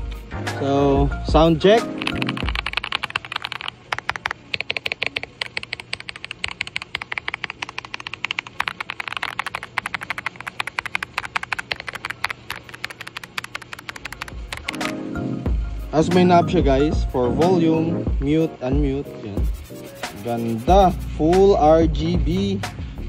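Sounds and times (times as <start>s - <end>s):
mechanical keyboard typing: 1.8s - 15.0s.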